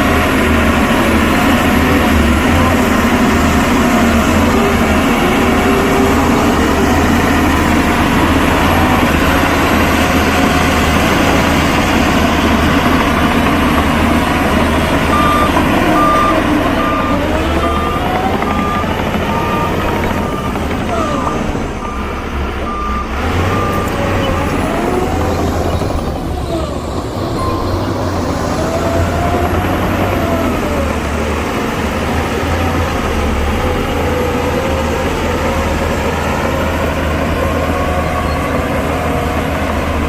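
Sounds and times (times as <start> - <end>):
heavy diesel machinery running: 0.0 - 40.0
reversing alarm beeps: 15.1 - 26.1, 27.3 - 28.1.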